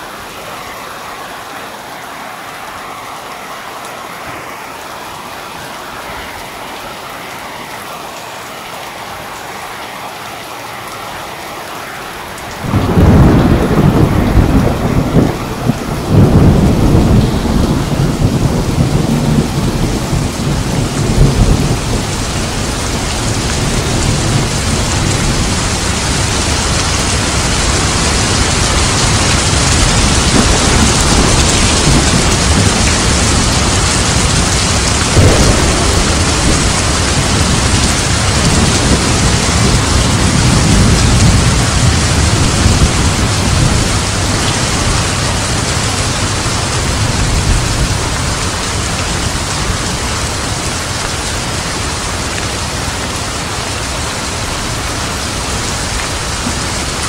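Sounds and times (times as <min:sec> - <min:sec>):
steady rain: 0:00.0 - 0:57.0
thunder rumble: 0:12.5 - 0:50.6.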